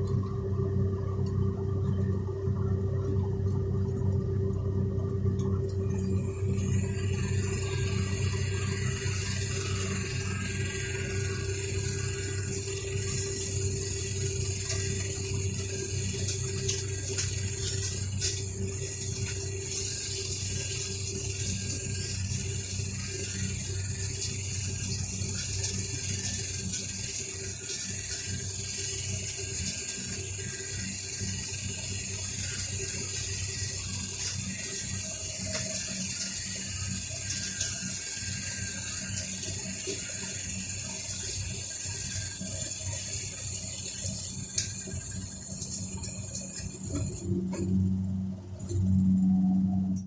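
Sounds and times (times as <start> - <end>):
low motor hum: 0.0 - 50.0.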